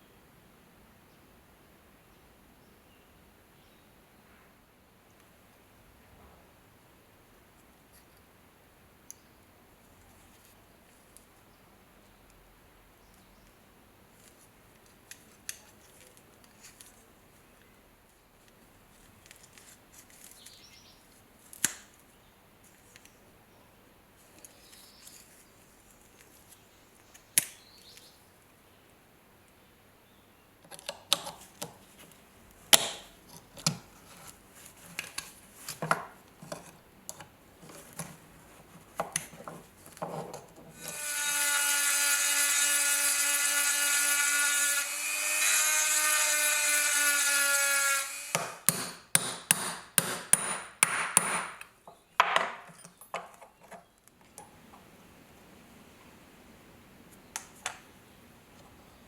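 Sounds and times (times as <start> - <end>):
small electric power tool running: 40.8 - 48.6.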